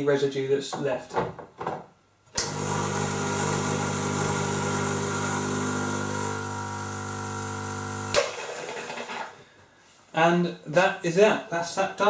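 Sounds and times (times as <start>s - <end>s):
espresso machine pump humming: 2.4s - 8.2s.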